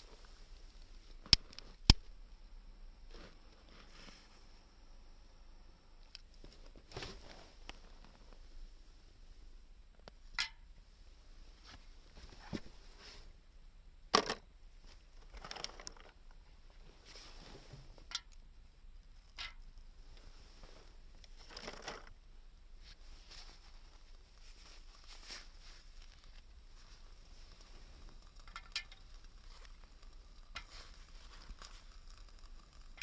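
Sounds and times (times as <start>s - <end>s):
soft crinkling and rustling: 0.0s - 4.8s, 6.0s - 13.4s, 14.7s - 33.0s
sharp clicks and knocks: 1.2s - 2.2s.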